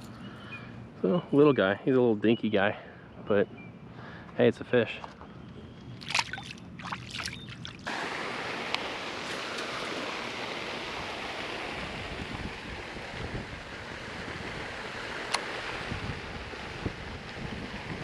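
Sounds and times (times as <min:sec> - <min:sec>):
rushing wind and water: 0:06.0 - 0:18.0.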